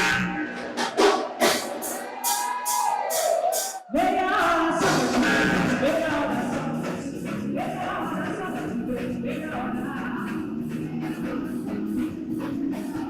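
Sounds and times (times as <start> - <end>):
sharp percussion strokes: 0.0 - 3.9
live band music: 0.0 - 13.0
person singing: 2.2 - 13.0.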